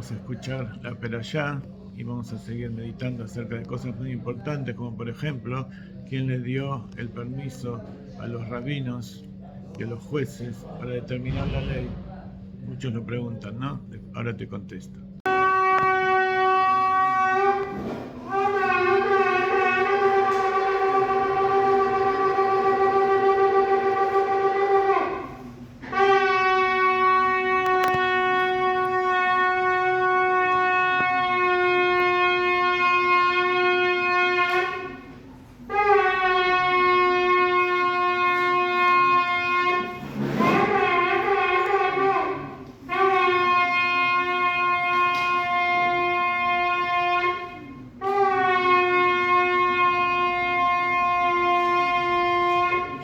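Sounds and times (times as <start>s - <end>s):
shofar long blasts: 15.3s - 53.0s.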